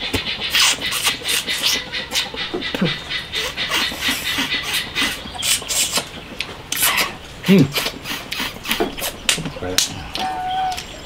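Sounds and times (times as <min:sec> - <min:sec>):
wet sucking and slurping: 0:00.5 - 0:02.4, 0:03.3 - 0:06.1, 0:06.7 - 0:09.2.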